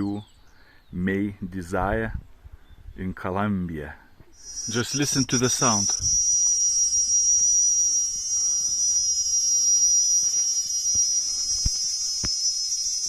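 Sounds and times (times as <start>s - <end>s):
cicadas buzzing: 4.3s - 13.0s.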